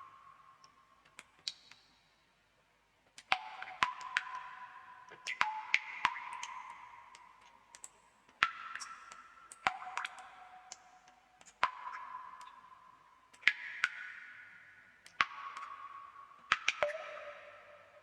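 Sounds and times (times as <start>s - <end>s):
water drops plinking into water: 3.2s - 12.8s, 15.0s - 18.0s.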